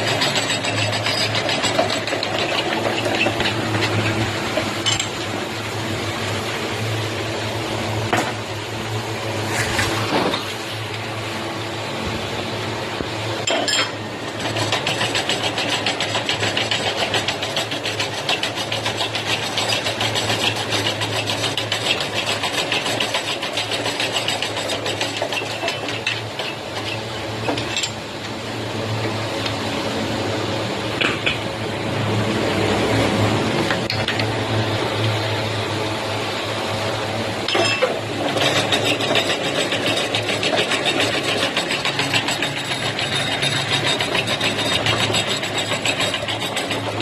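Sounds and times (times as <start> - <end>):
rapid mechanical clattering: 0.0 - 7.0, 13.4 - 28.3, 37.4 - 47.0
machinery low hum: 0.0 - 16.8, 26.3 - 47.0.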